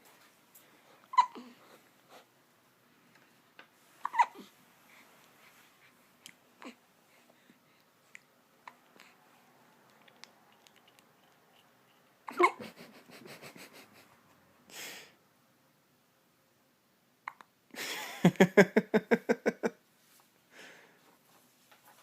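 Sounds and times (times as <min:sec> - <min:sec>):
squeaky hiccups: 0:01.1 - 0:01.5, 0:04.0 - 0:04.5, 0:17.2 - 0:17.5.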